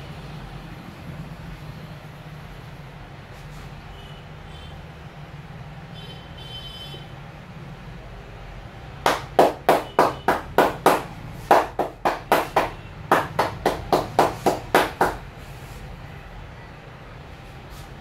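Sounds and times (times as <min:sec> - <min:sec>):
hands slapping in massage: 0:09.1 - 0:15.2.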